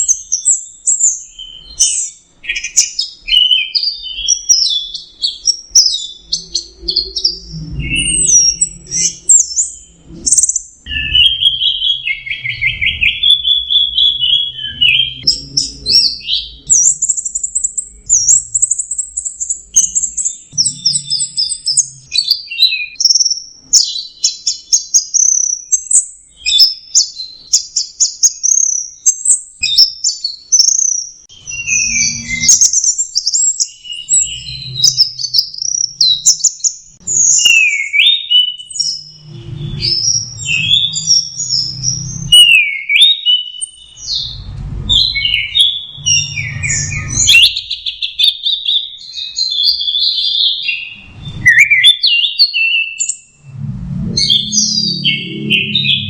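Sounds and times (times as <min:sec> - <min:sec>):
low rumble: 0:44.2 - 0:47.3, 0:53.3 - 0:56.0.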